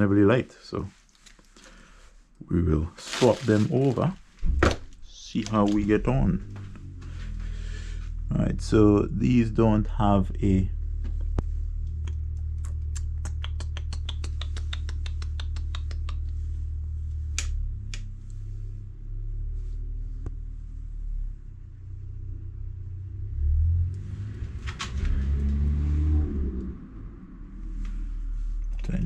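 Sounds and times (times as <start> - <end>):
steady low hum: 4.0 - 13.4
rapid sharp ticks: 11.9 - 16.4.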